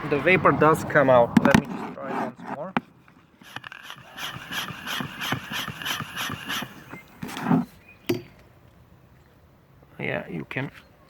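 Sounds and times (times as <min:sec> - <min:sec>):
hand pump strokes: 0:03.4 - 0:07.7.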